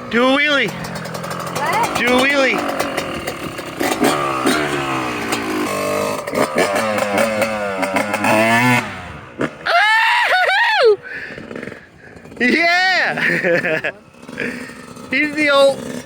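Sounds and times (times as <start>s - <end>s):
dirt bike engine revving: 0.0s - 10.2s, 11.1s - 16.0s
person shouting: 1.6s - 2.0s, 9.7s - 11.0s.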